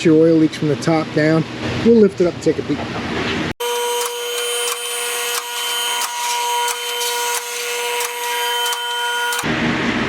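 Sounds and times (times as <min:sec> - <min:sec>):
hydraulic pump motor whining: 0:03.6 - 0:09.5.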